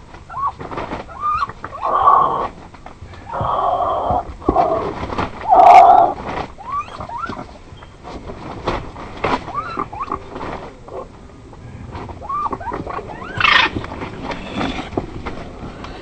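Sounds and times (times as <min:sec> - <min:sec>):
animal harsh cries: 0:00.3 - 0:02.5, 0:03.3 - 0:07.5, 0:12.2 - 0:14.9
squeaky animal calls: 0:05.5 - 0:07.4, 0:09.5 - 0:10.2, 0:12.2 - 0:14.9.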